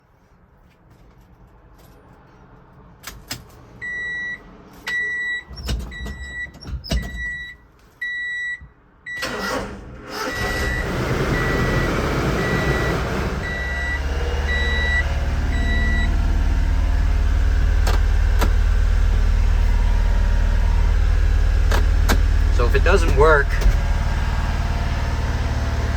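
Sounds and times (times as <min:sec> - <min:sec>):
electronic warning beep: 0:03.8 - 0:09.3, 0:10.2 - 0:16.3
engine starter clicks: 0:09.1 - 0:10.9, 0:21.6 - 0:23.9
engine cranking and idling rough: 0:09.2 - 0:25.9.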